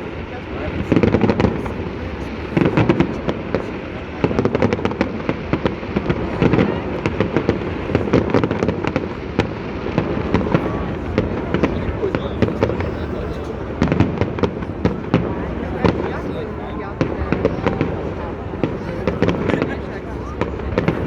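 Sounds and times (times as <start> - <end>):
low rumble of firework bursts: 0.0 - 21.0.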